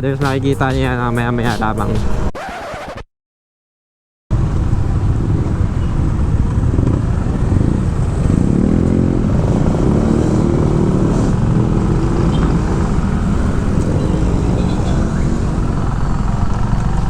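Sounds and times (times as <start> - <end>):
wind rumble on microphone: 4.3 - 17.0
motorbike engine running: 4.8 - 17.0.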